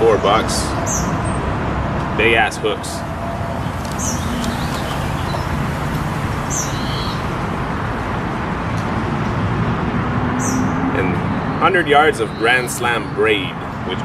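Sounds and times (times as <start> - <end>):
distant traffic: 0.0 - 14.0
high bird chirps: 3.0 - 7.6.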